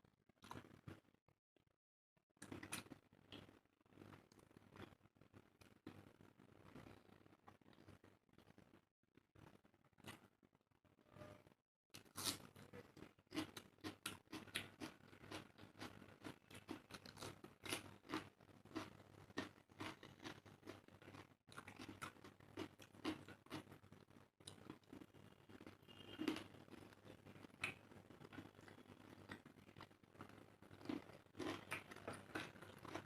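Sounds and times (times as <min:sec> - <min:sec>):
crunching bites: 0:30.2 - 0:33.0.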